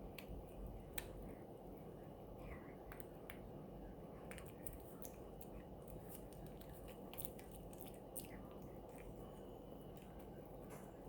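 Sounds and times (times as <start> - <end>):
steady low background noise: 0.0 - 11.0
dog gnawing chew stick: 4.3 - 9.3.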